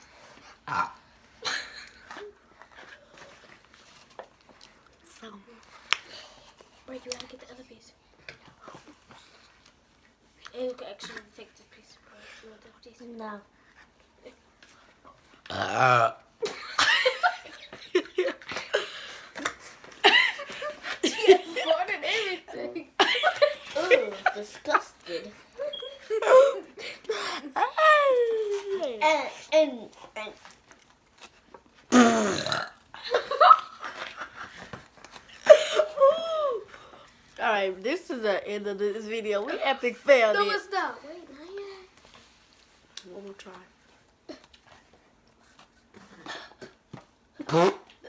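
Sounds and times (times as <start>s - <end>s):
loud low burp: 0.7s - 1.0s, 15.5s - 16.2s, 31.9s - 32.8s
giggling: 16.4s - 28.7s
short vocal sounds: 47.4s - 47.9s.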